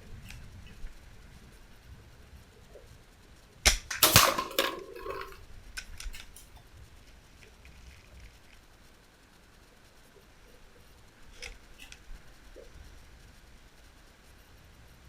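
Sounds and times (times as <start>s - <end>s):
pellet hitting steel target: 3.9s - 5.4s.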